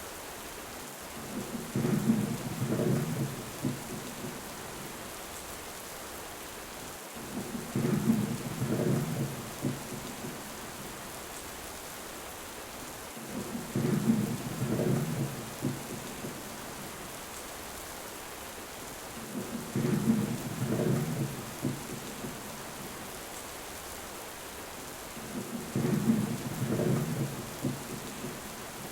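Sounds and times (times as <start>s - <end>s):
heavy rain: 0.0s - 28.9s
thunder rumbling: 1.3s - 4.5s, 7.3s - 10.4s, 13.3s - 16.9s, 19.2s - 22.9s, 25.2s - 28.9s.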